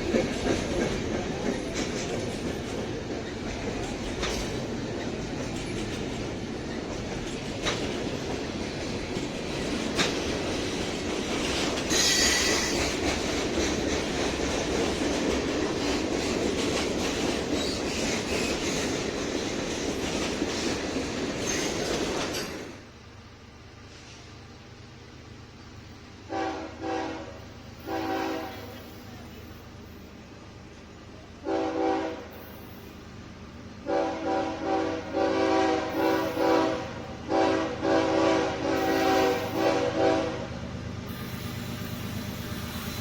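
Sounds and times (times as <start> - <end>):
train wheel clacks: 0.0 - 22.9
freight train rumbling on rails: 0.0 - 43.0
high-pitched wheel squeal: 11.9 - 12.9, 41.1 - 43.0.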